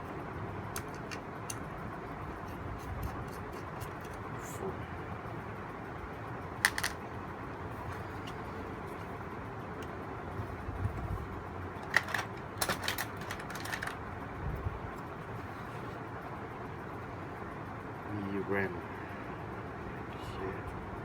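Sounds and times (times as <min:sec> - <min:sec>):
screwdriver and metal parts clicking: 0:00.7 - 0:01.7, 0:02.3 - 0:04.3, 0:06.6 - 0:07.0, 0:11.8 - 0:14.0.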